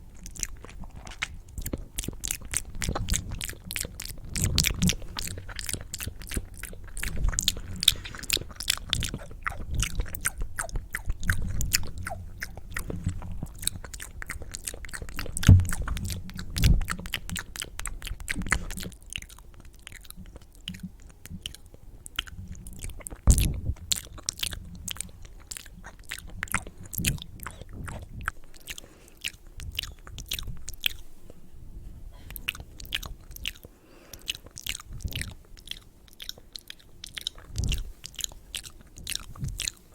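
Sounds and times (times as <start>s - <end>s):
low thumps: 15.3s - 16.9s
wet mouth clicks and smacks: 32.3s - 39.8s.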